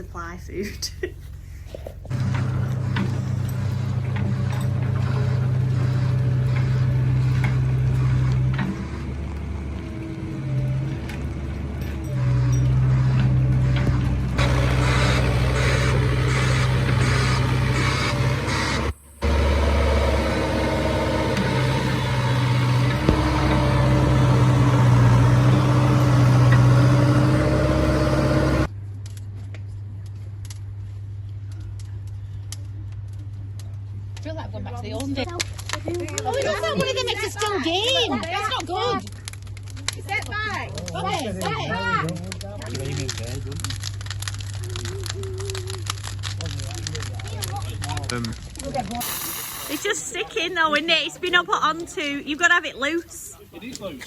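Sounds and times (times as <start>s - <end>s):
vehicle engine running: 0.0s - 28.9s, 40.8s - 54.0s
low hum: 0.0s - 34.2s.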